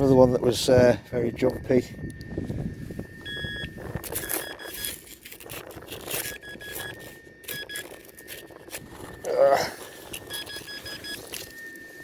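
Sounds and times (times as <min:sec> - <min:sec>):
faint steady tone: 0:00.0 - 0:12.0
metal detector beeps: 0:00.0 - 0:12.0
scraping and rustling: 0:04.0 - 0:12.0.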